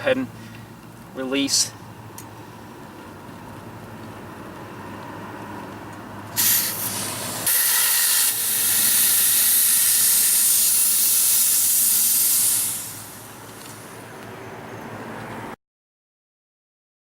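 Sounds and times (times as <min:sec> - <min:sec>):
gas hissing from inflator: 0:06.3 - 0:14.0.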